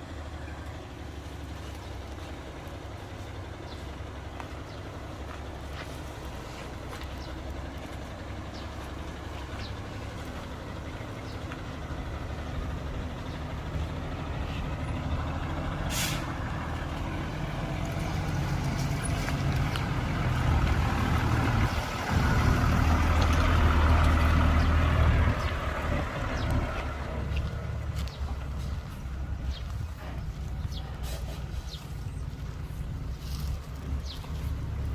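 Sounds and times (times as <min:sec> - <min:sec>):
diesel truck engine running: 0:00.0 - 0:34.9
air brakes hissing: 0:15.8 - 0:16.4.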